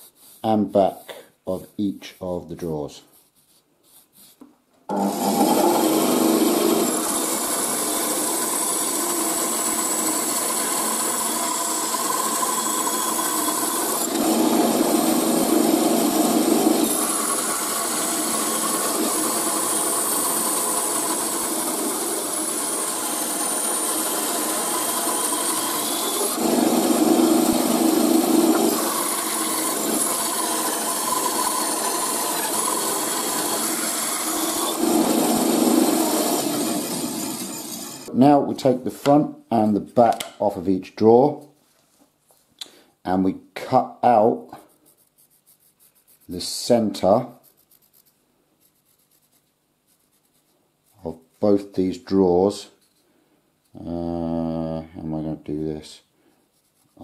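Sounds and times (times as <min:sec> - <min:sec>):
bandsaw cutting wood: 0:04.9 - 0:38.1
high whine of saw: 0:04.9 - 0:38.1.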